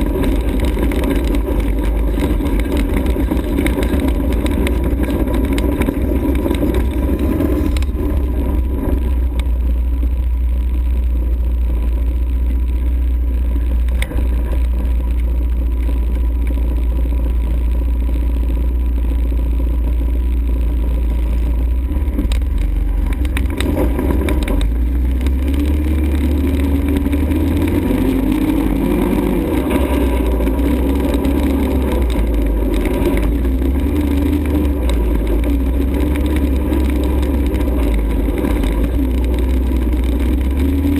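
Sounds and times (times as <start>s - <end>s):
atv engine running: 0.0s - 40.9s.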